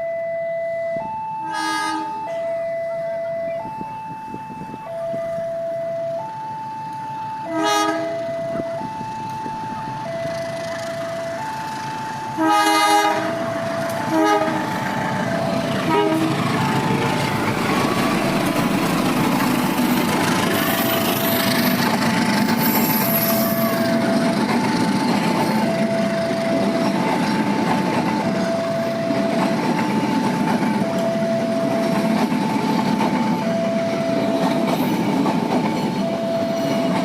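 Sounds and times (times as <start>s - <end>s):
two-tone crossing alarm: 0.0s - 37.0s
train horn blasts: 1.4s - 3.5s, 7.4s - 8.9s, 12.3s - 14.8s, 15.8s - 16.8s
train wheels on rails: 3.5s - 37.0s.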